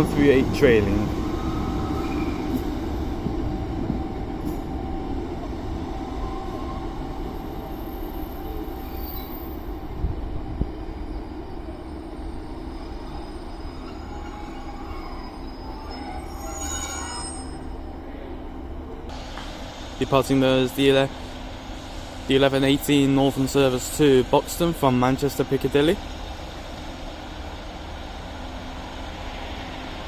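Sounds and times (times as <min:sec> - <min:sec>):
diesel train running: 0:00.0 - 0:30.0
high wavering squealing: 0:11.0 - 0:17.8.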